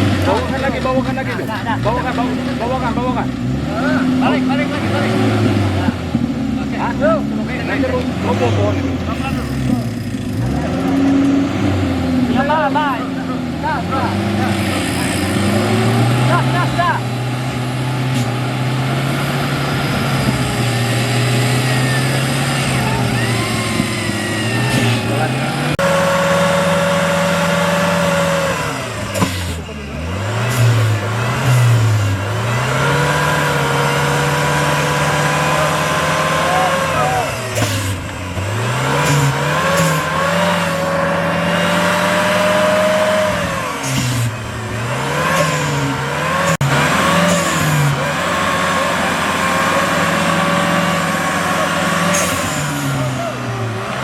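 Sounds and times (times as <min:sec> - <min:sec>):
engine revving under load: 0:00.0 - 0:54.0.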